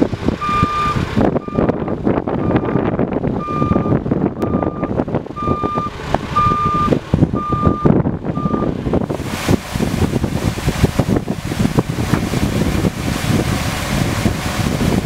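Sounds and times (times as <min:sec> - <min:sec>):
diesel truck engine rumble: 0:00.0 - 0:15.0
reversing alarm beeps: 0:00.4 - 0:01.7, 0:03.4 - 0:08.7.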